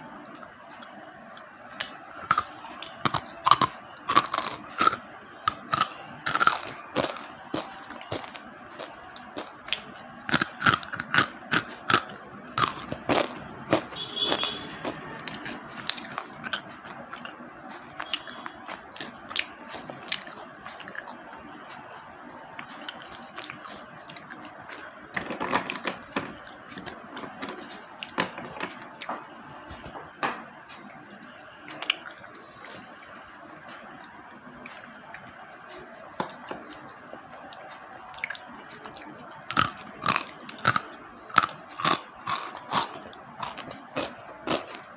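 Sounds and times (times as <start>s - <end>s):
slate pencils crunching when chewed: 0.3s - 21.8s, 22.6s - 29.1s, 37.5s - 44.9s.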